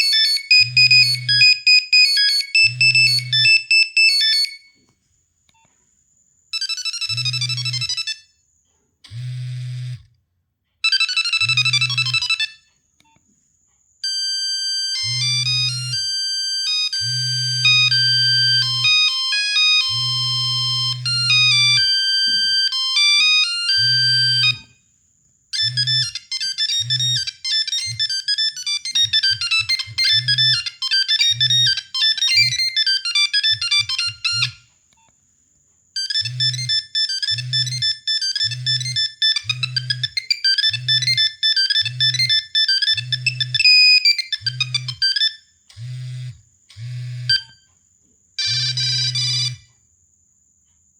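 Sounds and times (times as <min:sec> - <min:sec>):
mobile phone ringtone beeping melody: 0:00.0 - 0:04.8, 0:06.6 - 0:08.3, 0:10.8 - 0:12.6, 0:14.0 - 0:24.8, 0:25.6 - 0:34.7, 0:36.0 - 0:46.2, 0:48.4 - 0:49.7.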